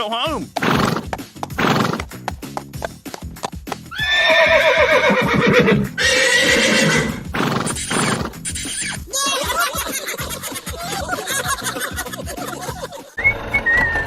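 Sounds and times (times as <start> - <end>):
background music: 0.0 - 13.8
neigh-like animal call: 3.9 - 8.2.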